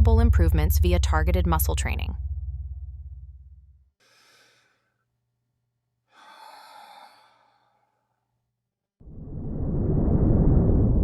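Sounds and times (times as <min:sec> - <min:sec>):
low drone: 0:00.0 - 0:03.8
person breathing faintly: 0:04.0 - 0:05.0, 0:06.1 - 0:08.2.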